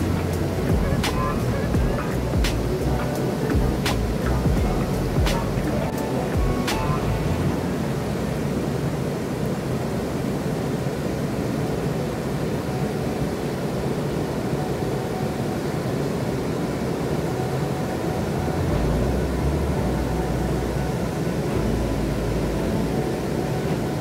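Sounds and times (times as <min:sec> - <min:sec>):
low rumble: 0:00.0 - 0:08.8.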